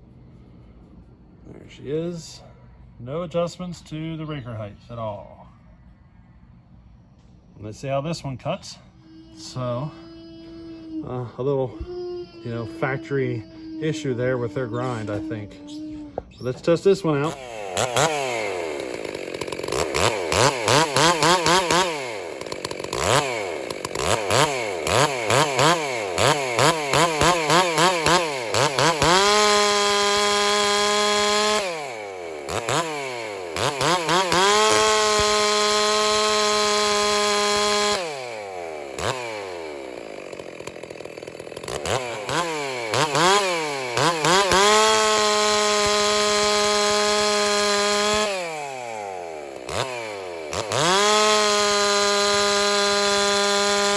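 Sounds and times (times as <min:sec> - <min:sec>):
chainsaw revving: 0:12.4 - 0:15.6, 0:16.2 - 0:53.9
chainsaw cutting wood: 0:16.2 - 0:53.9.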